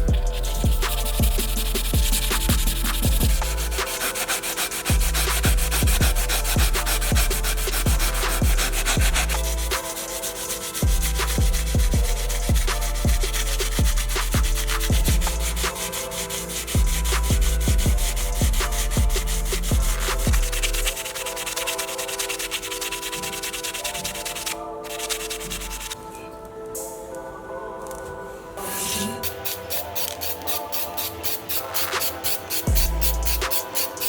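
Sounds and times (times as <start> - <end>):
electronic music with kick drum: 0.0 - 21.0, 31.8 - 34.0
sandpaper rubbing on model car: 0.3 - 26.0, 29.2 - 34.0.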